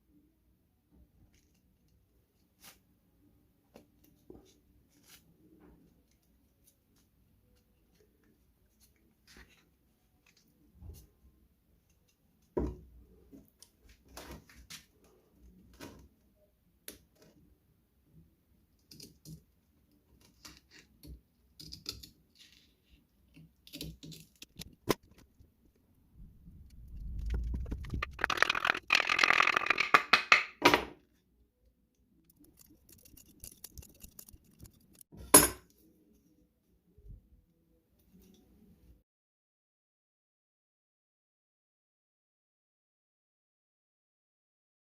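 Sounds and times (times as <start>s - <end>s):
scraping or rustling: 24.0s - 30.0s, 32.3s - 35.0s
tools and parts clicking: 32.3s - 35.6s.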